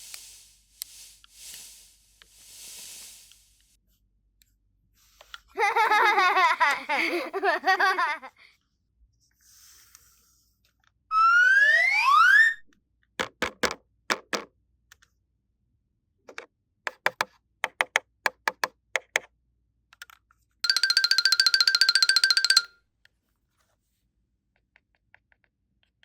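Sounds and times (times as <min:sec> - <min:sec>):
rising whistle glide: 0:11.1 - 0:12.7
fast repeating jingle: 0:20.6 - 0:22.7.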